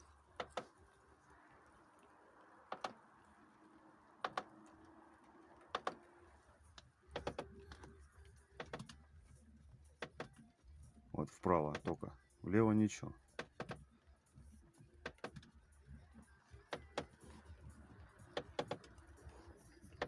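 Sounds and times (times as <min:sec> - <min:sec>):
crunching clicks from car suspension: 0:00.0 - 0:09.1, 0:13.2 - 0:14.0, 0:14.9 - 0:15.6, 0:16.5 - 0:20.0.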